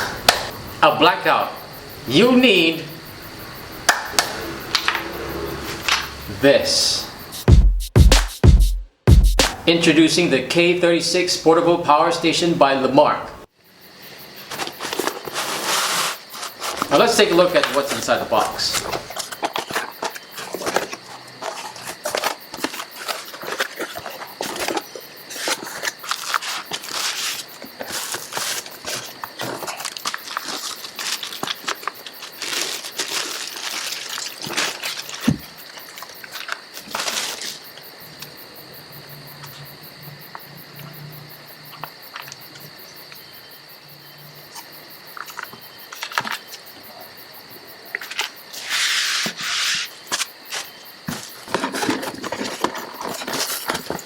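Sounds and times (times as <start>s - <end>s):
packaging crinkling and rustling: 14.5s - 37.7s, 50.2s - 54.0s.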